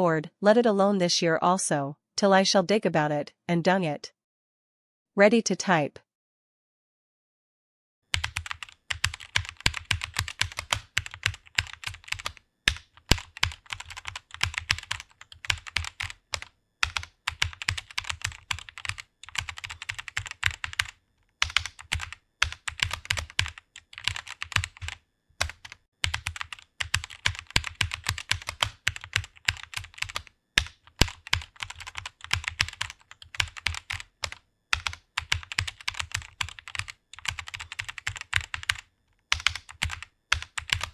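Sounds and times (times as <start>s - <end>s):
fast typing on keyboard: 8.1s - 40.9s.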